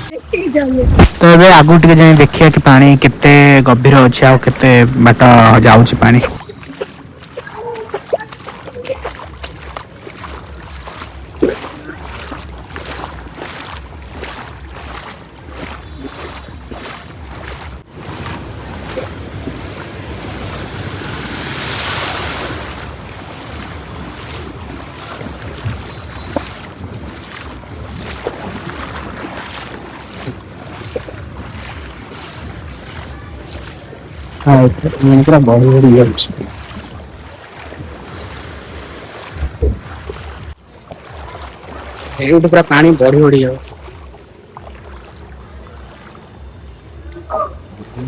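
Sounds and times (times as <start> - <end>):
wind buffeting microphone: 0.0 - 8.4, 14.1 - 42.0
floodwater rushing: 0.0 - 48.0.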